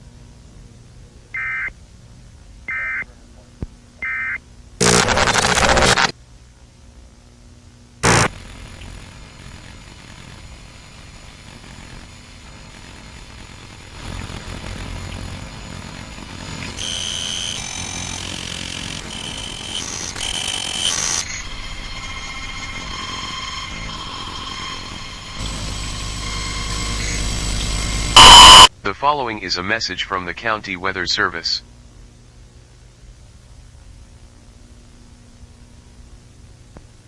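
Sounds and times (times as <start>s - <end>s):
short high beeping tones: 1.4s - 1.7s, 28.2s - 28.7s
steady tones: 4.8s - 6.1s, 8.0s - 8.5s, 16.8s - 28.7s.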